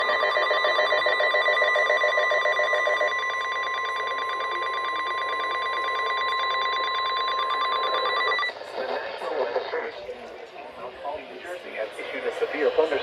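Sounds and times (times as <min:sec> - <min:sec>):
steady warning alarm tone: 0:00.0 - 0:08.6.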